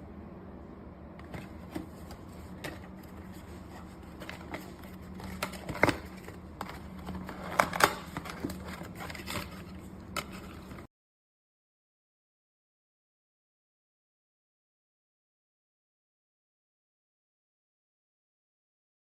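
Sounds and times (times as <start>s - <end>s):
steady low hum: 0.0s - 10.9s.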